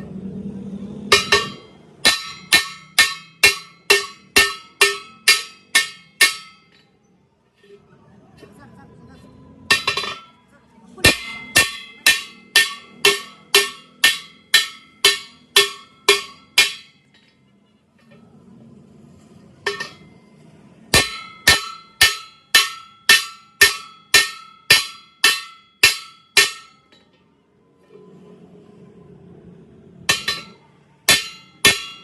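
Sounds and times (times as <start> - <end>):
hammer ringing on steel: 1.1 - 7.0, 9.6 - 10.4, 11.0 - 17.4, 19.6 - 27.3, 30.0 - 32.0.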